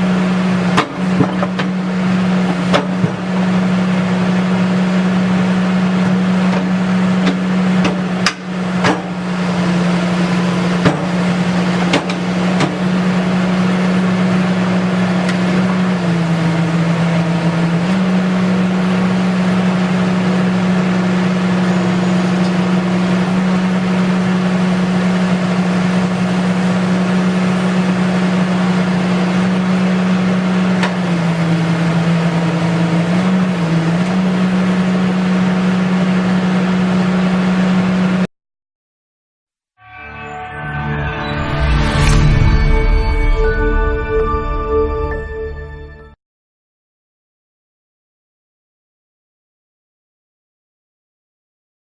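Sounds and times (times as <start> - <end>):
excavator engine running: 0.0 - 38.3.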